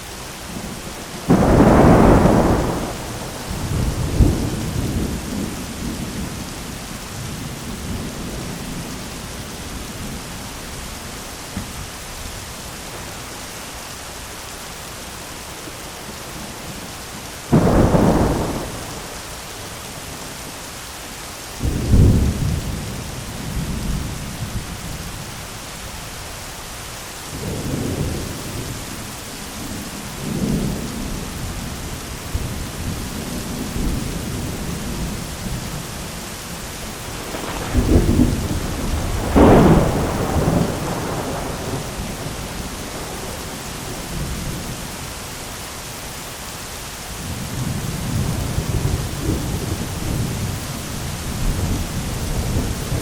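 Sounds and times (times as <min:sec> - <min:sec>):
rain pattering on an umbrella: 0:00.0 - 0:53.0
thunder: 0:01.2 - 0:06.4, 0:17.5 - 0:19.2, 0:37.0 - 0:44.7.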